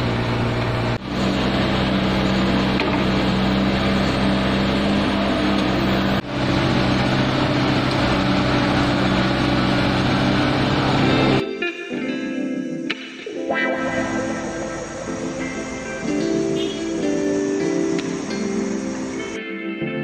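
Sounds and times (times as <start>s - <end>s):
machinery engine humming: 0.0s - 11.4s, 13.8s - 19.4s
music: 11.0s - 20.0s.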